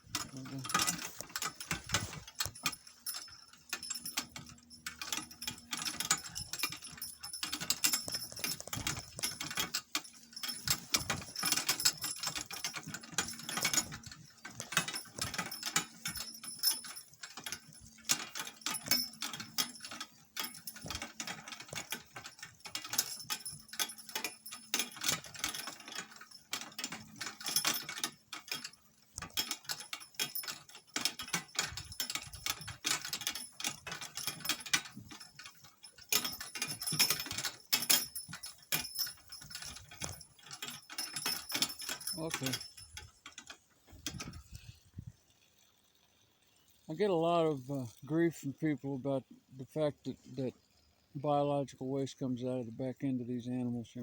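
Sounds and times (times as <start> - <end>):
harness and cart fittings jingling: 0.0 - 54.0.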